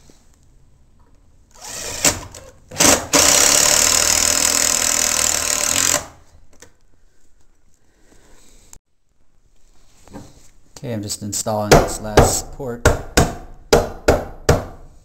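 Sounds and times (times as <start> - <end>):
power drill driving a screw: 1.5 - 6.1.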